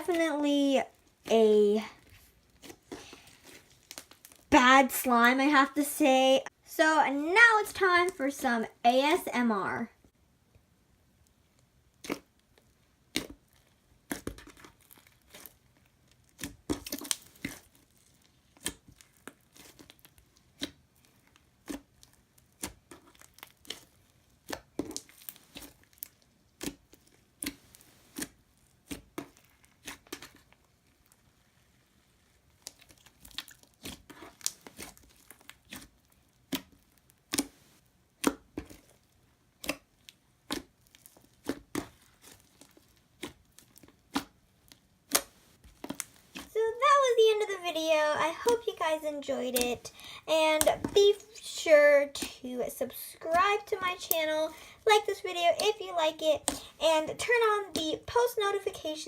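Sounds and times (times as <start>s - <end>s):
slime squished by hand: 11.9s - 46.5s.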